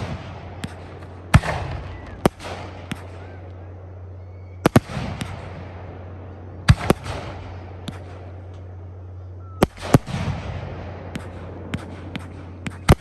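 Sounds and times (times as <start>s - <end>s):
faint fireworks pops: 0.0s - 3.6s, 4.6s - 5.7s, 6.7s - 8.7s, 9.6s - 13.0s
fireworks bangs: 0.0s - 8.9s, 9.5s - 13.0s
fireworks crackling: 0.0s - 13.0s.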